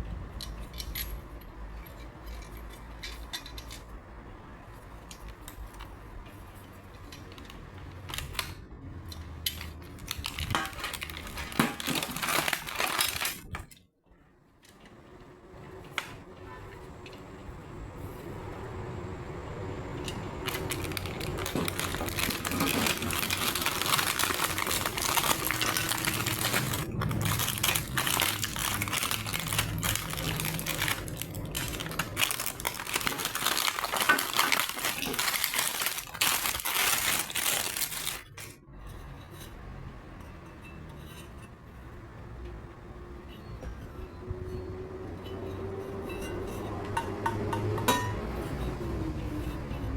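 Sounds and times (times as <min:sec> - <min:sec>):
plastic packaging crinkling: 0:09.5 - 0:13.8, 0:20.2 - 0:38.6.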